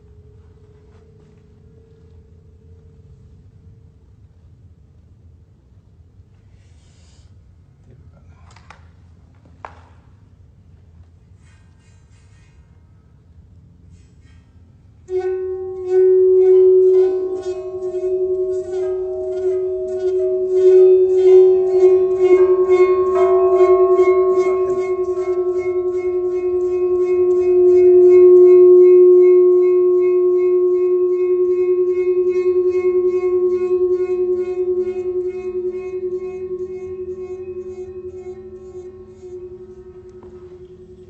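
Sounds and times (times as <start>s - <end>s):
higher ringing tones: 0.0s - 4.2s, 15.1s - 41.0s
steady humming tone: 0.0s - 8.0s, 14.8s - 41.0s.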